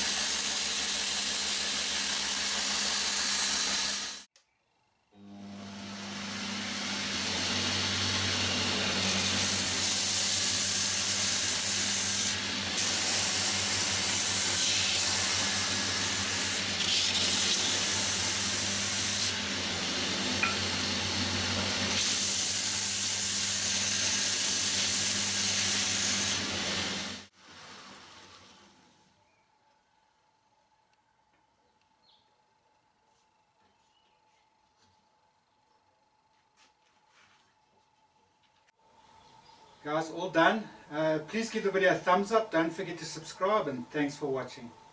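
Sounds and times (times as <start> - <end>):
belt grinder motor humming: 0.0 - 4.3, 5.2 - 27.3.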